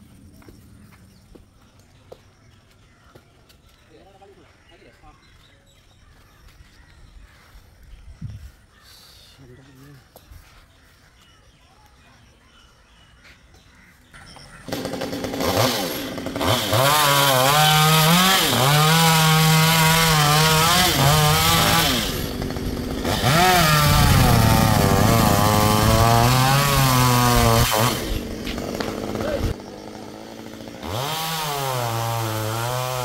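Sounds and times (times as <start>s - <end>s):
chainsaw engine revving: 14.5s - 33.0s.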